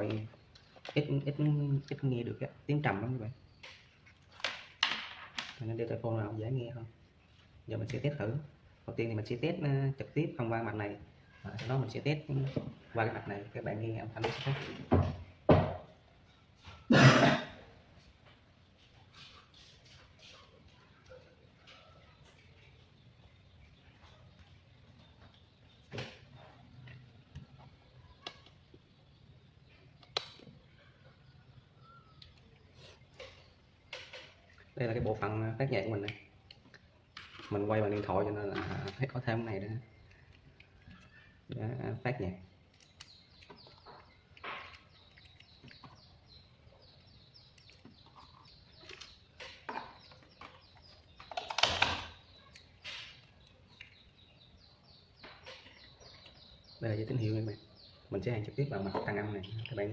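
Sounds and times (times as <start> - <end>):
objects knocking and clattering: 4.4 - 5.7, 14.2 - 16.0, 33.2 - 35.2, 47.8 - 52.2
sharp clicks: 30.0 - 30.5.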